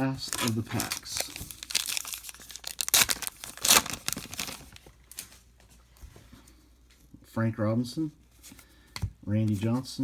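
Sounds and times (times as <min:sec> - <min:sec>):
wrapper tearing and crinkling: 0:00.0 - 0:05.3.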